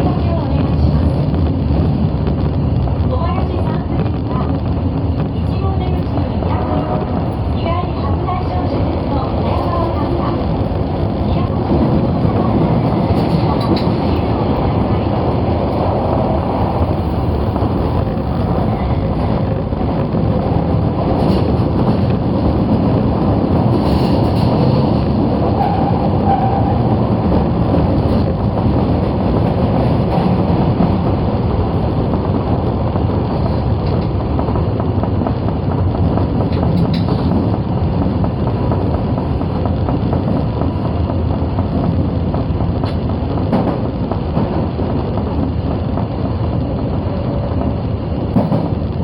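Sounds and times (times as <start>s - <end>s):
subway train rumbling on track: 0.0s - 49.0s.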